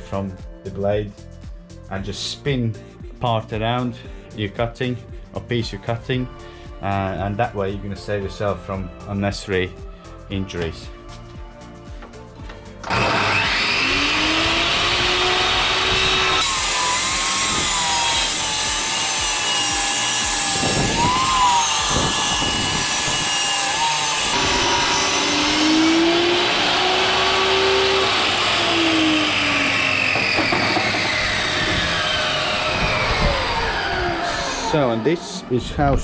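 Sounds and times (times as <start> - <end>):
table saw cutting wood: 12.8 - 36.0.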